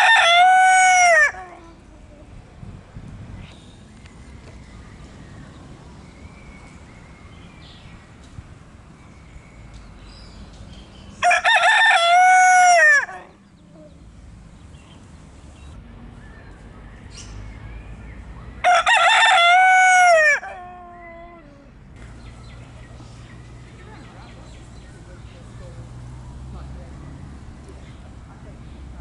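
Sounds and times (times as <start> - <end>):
rooster crowing: 0.0 - 1.8, 11.2 - 13.4, 18.6 - 21.6.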